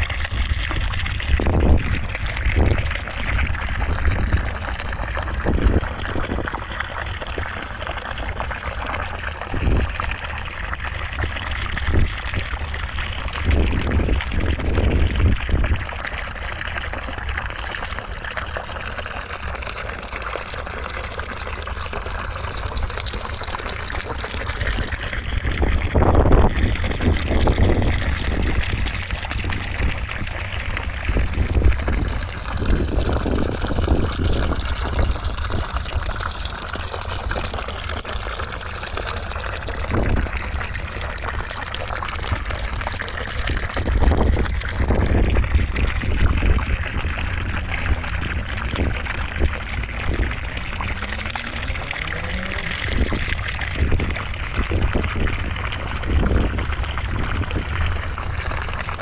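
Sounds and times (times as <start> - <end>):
rushing water noise: 0.0 - 59.0.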